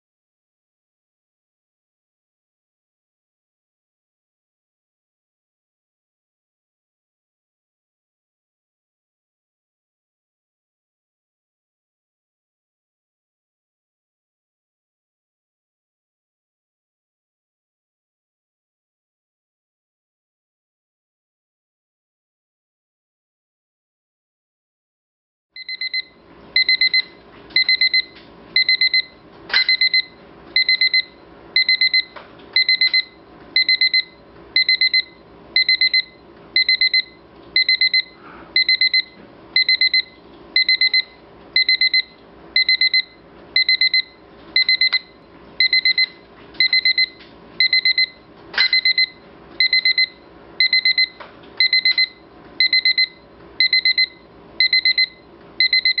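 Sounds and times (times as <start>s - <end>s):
electronic alarm beeping: 25.6s - 56.0s.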